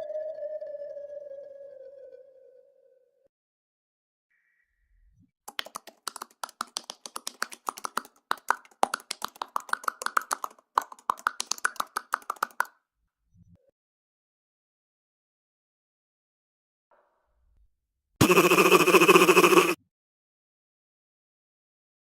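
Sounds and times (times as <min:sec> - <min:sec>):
fast short sharp clicks: 0:05.5 - 0:12.7, 0:18.2 - 0:19.8.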